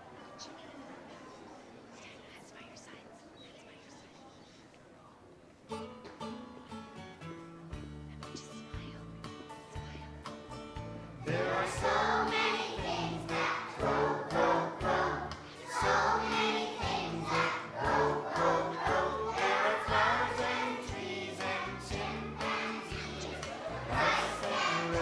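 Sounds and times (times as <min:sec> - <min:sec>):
children singing together: 0:11.2 - 0:25.0.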